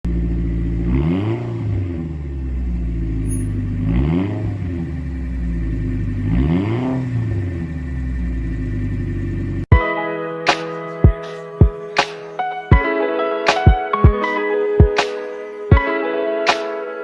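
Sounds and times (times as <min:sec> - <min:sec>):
car engine idling and revving: 0:00.0 - 0:09.7.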